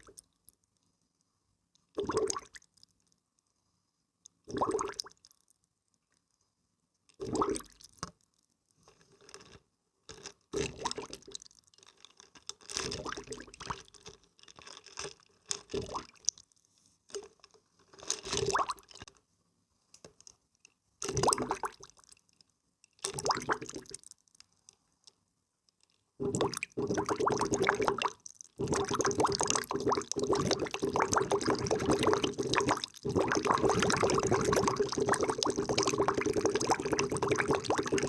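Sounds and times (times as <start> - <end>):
water dripping: 26.2 - 38.0
water splashing and pouring: 26.2 - 38.0.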